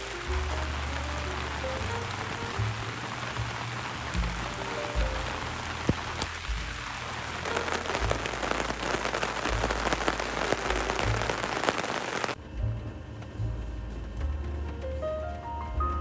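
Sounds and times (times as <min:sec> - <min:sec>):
rain drops striking surface: 0:00.0 - 0:12.4.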